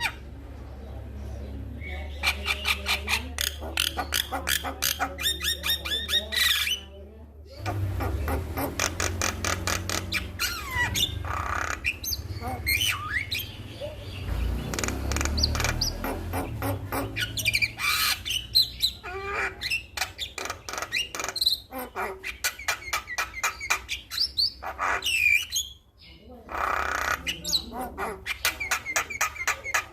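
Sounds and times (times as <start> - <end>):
bird singing squawks and whistles: 7.5 - 29.9.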